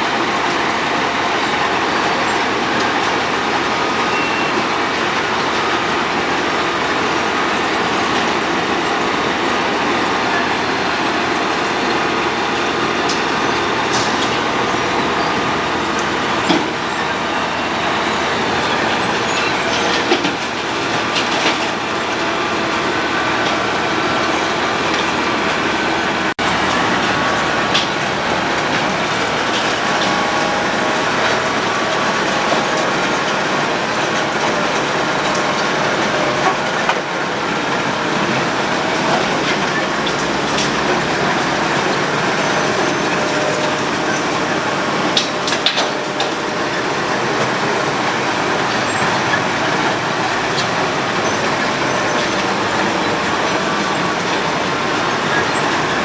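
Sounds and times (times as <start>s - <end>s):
road milling machine grinding: 0.0s - 56.0s.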